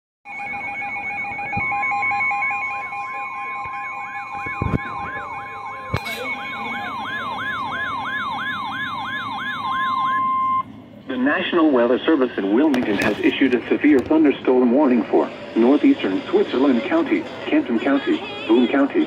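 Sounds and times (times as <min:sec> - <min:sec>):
electronic warning siren sweeping: 0:00.3 - 0:10.7
steady electronic alert tones: 0:00.3 - 0:10.7.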